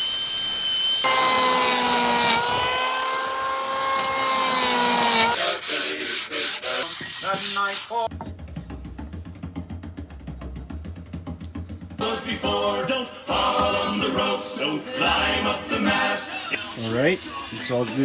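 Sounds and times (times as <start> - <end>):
power saw cutting wood: 1.0 - 8.1.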